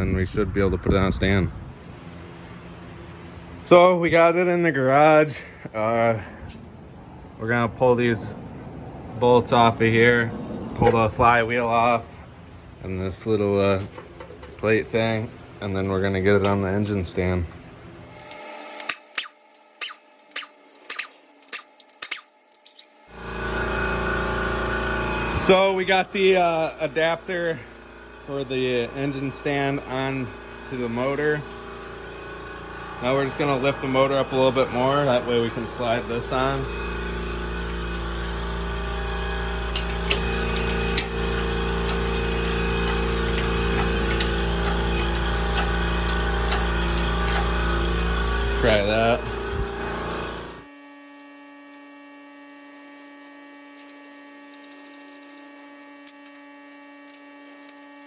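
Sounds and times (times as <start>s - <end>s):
motor hum with low drone: 0.0s - 58.0s
sharp metallic wrench clicks: 18.8s - 22.9s.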